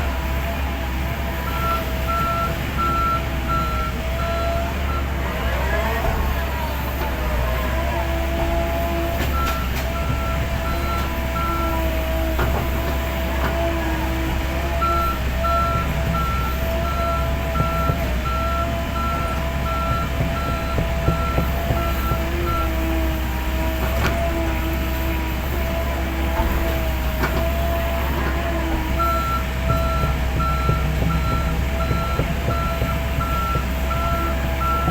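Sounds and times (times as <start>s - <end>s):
heavy machine engine hum: 0.0s - 34.9s.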